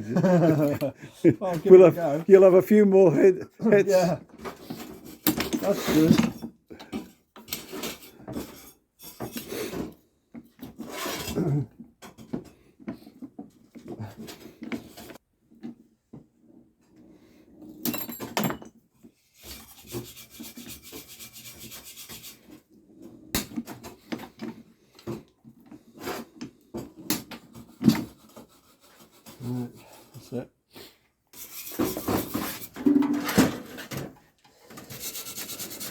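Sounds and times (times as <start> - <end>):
hand tools scraping rusty steel: 4.5 - 9.8, 19.4 - 22.6, 31.3 - 34.0, 34.7 - 35.9.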